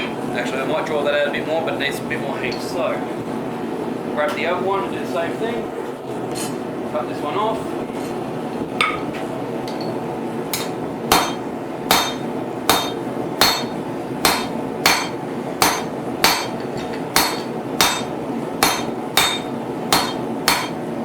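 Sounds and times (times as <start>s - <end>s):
hammer striking steel on anvil: 9.7s - 20.8s.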